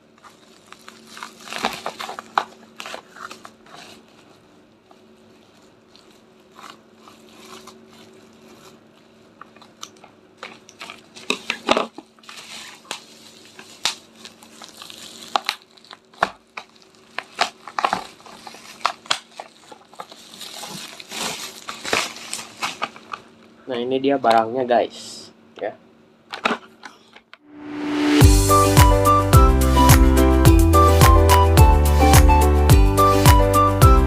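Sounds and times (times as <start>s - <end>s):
plastic packaging tearing and crinkling: 0.1s - 23.4s.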